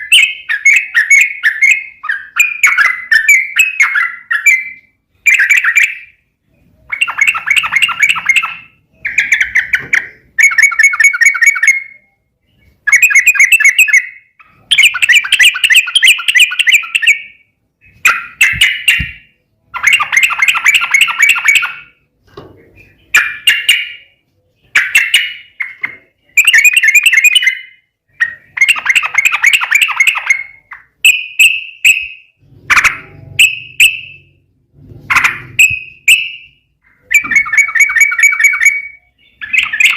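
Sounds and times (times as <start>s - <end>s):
bird singing bubbly chattering phrases: 0.0s - 12.0s, 12.6s - 22.0s, 22.8s - 31.1s.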